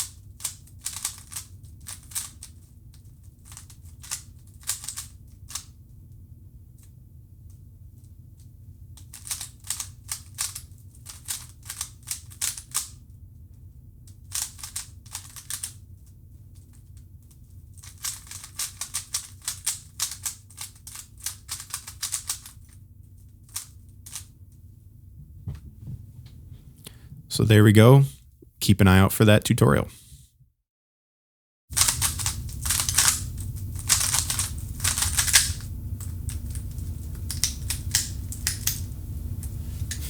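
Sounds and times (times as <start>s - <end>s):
puzzle cube plastic clicks: 0.1s - 2.6s, 17.8s - 22.6s, 31.8s - 35.6s.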